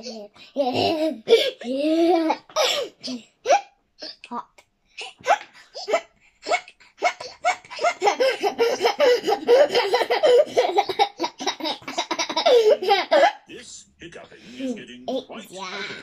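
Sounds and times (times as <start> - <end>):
baby laughing: 0.0 - 2.8, 5.0 - 13.4, 14.5 - 16.0.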